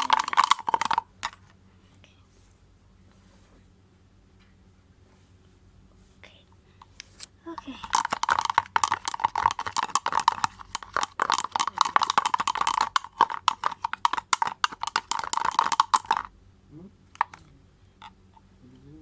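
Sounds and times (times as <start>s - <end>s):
utensil scraping and clicking in container: 0.0s - 1.5s, 6.9s - 16.3s, 17.1s - 17.4s.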